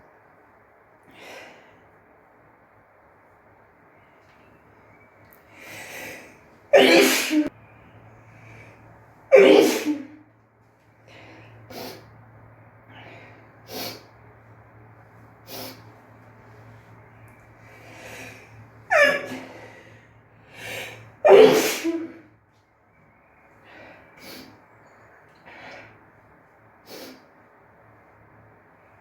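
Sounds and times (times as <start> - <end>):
woman sneezing: 6.8 - 7.5, 9.3 - 10.1, 18.9 - 19.5, 21.3 - 22.2.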